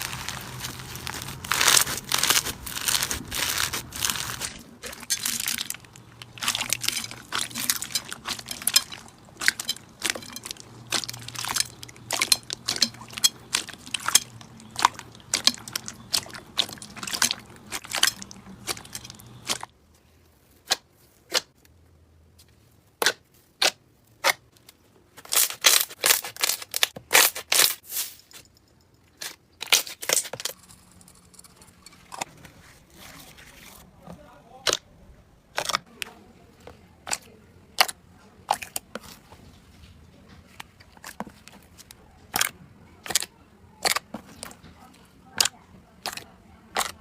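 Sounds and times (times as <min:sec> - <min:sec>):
slime popping and crackling: 0:00.0 - 0:19.7.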